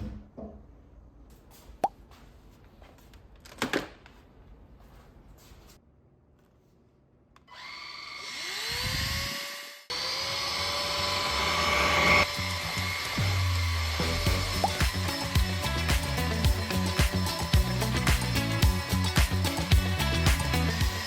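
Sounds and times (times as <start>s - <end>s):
vacuum cleaner motor whine: 7.5s - 16.0s.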